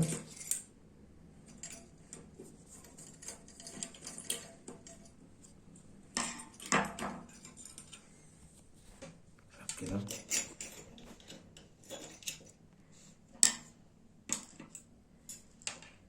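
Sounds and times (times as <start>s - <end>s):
small metal parts clicking: 0.0s - 0.7s, 1.5s - 5.2s.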